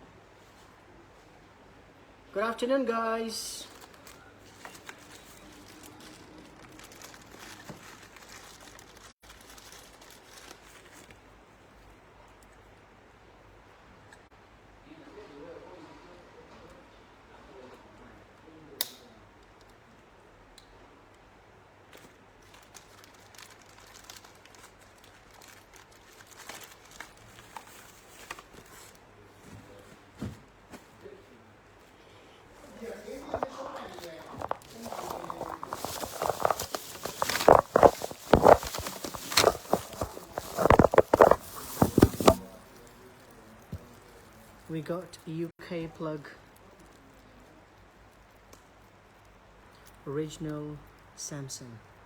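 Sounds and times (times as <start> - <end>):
rustling and crinkling: 3.5 - 12.0, 21.9 - 45.5.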